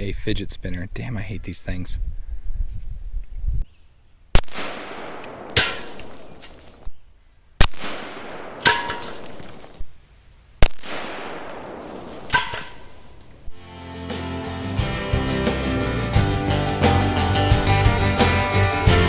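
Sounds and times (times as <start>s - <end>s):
sharp ringing crack: 4.4s - 6.6s, 7.6s - 9.8s, 10.6s - 13.2s
rifle shots echoing: 4.4s - 6.8s, 7.6s - 9.8s, 10.6s - 13.2s.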